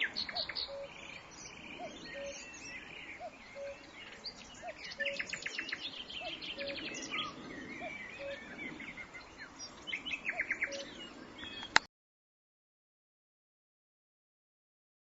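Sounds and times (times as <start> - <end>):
cuckoo calling: 0.0 - 11.9
nightingale singing: 0.0 - 11.9.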